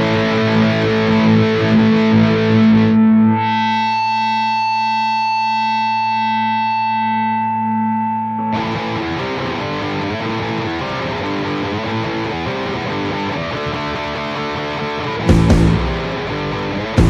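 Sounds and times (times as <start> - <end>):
loud rock band: 0.0 - 3.6, 8.5 - 17.0
distorted electric guitar chord: 0.0 - 17.0.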